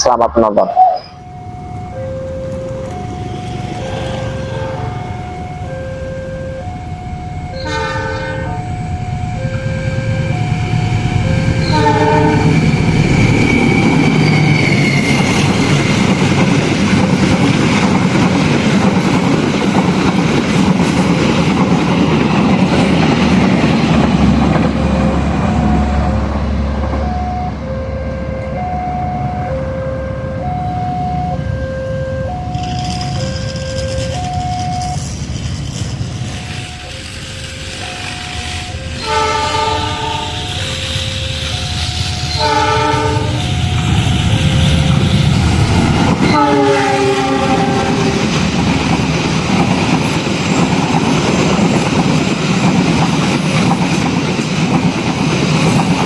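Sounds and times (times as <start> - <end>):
two-note crossing warning signal: 0.0 - 15.5, 25.5 - 35.2, 36.2 - 48.2
train running noise: 0.0 - 56.0
train horn blasts: 3.8 - 5.2, 7.5 - 8.7, 11.6 - 12.7, 37.8 - 40.6, 42.2 - 44.9, 46.2 - 48.3.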